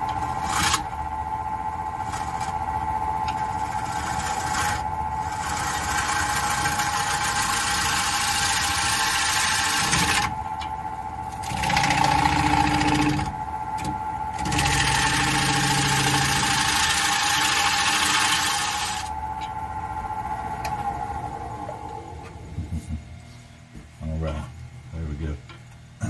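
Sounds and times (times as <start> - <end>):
wood lathe whine: 0.0 - 22.8
gouge cutting wood: 3.5 - 10.3, 11.4 - 13.3, 14.4 - 19.1.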